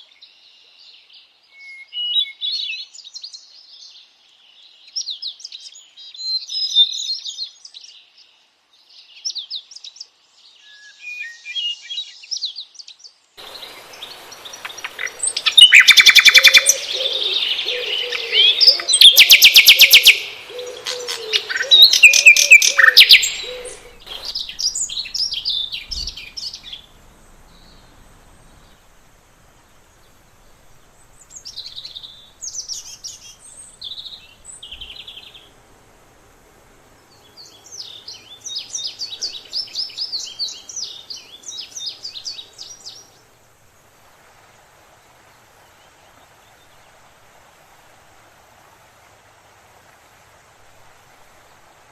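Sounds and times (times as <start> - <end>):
songbirds chirping and singing: 4.9 - 29.0, 29.6 - 35.5
rapid bird trills: 13.4 - 29.0.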